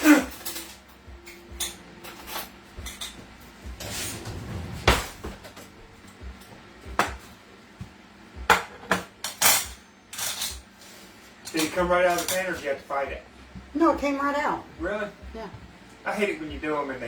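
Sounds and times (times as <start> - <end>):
utensils and dishes clinking: 0.0 - 6.2, 8.5 - 12.9.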